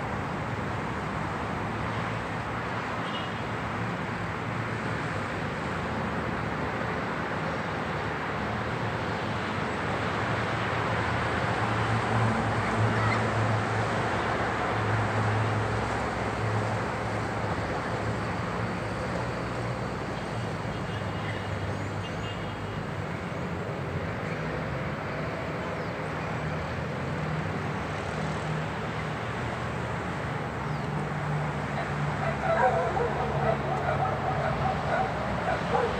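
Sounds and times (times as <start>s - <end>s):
cars passing: 21.5s - 35.9s.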